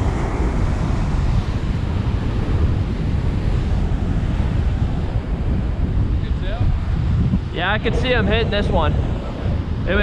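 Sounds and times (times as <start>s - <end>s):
wind rumbling on microphone: 0.0s - 10.0s.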